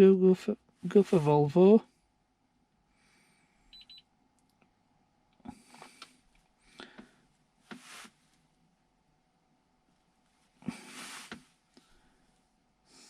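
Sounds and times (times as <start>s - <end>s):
faint high electronic beeps: 3.7s - 4.1s
soft rustles: 7.6s - 8.5s, 10.0s - 12.0s.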